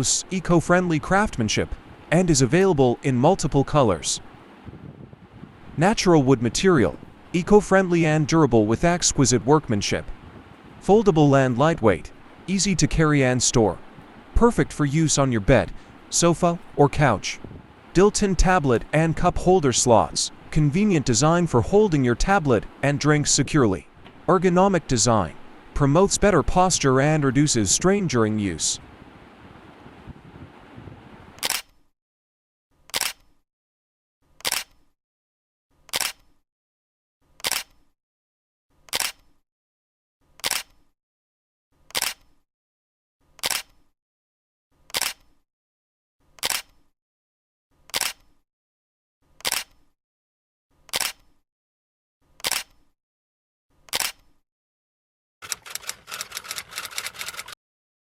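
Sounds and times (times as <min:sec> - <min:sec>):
faint steady hiss: 0:05.4 - 0:31.2
camera shutter clicks: 0:31.4 - 0:31.8, 0:32.9 - 0:33.3, 0:34.4 - 0:34.8, 0:35.9 - 0:36.3, 0:37.4 - 0:37.8, 0:38.9 - 0:39.2, 0:40.4 - 0:40.8, 0:41.9 - 0:42.3, 0:43.4 - 0:43.8, 0:44.9 - 0:45.3, 0:46.4 - 0:46.8, 0:47.9 - 0:48.3, 0:49.4 - 0:49.8, 0:50.9 - 0:51.3, 0:52.4 - 0:52.8, 0:53.9 - 0:54.2, 0:55.4 - 0:57.6
rapid clicks: 0:55.4 - 0:57.6.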